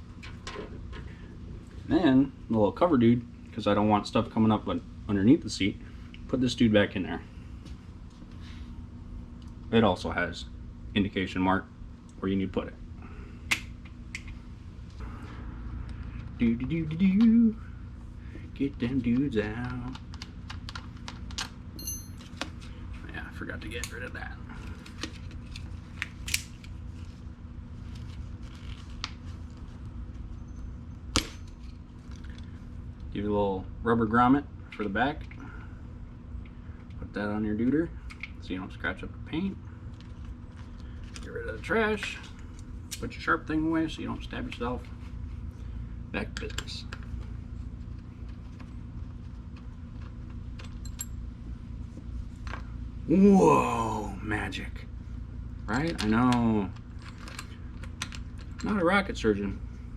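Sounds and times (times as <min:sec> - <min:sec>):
low steady hum: 0:00.0 - 0:59.9
light metallic jingle: 0:21.8 - 0:22.2.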